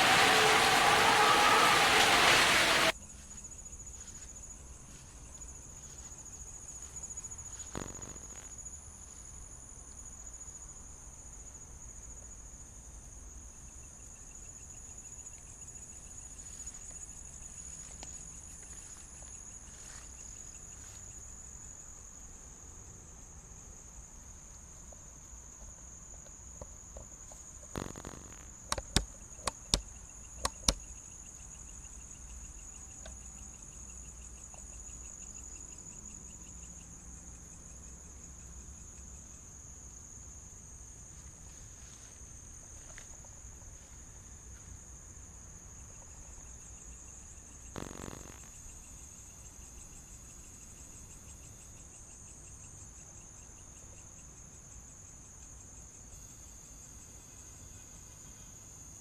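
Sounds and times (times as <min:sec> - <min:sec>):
insects trilling: 0:00.0 - 0:02.9, 0:45.8 - 0:59.0
loud noise: 0:00.0 - 0:02.9.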